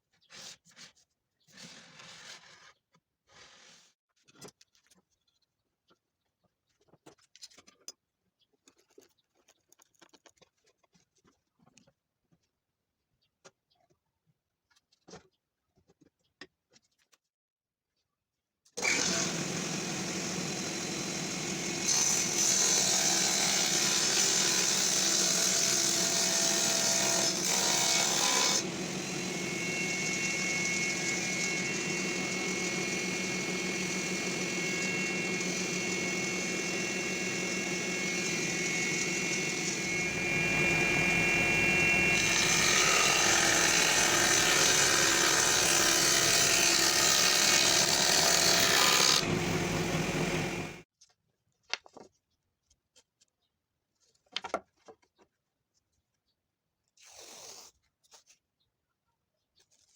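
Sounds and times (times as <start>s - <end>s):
saw blade cutting wood: 18.8s - 50.8s
table saw motor humming: 18.8s - 50.8s.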